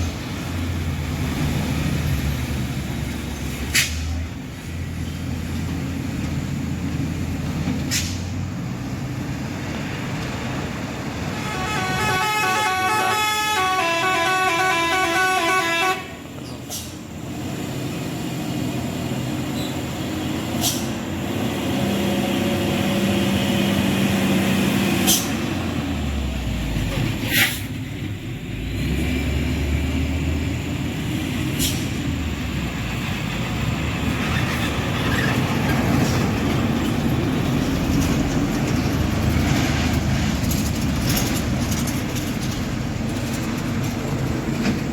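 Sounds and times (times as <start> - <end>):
truck engines labouring: 0.0 - 44.9
multi-tone horn melody: 11.3 - 16.2.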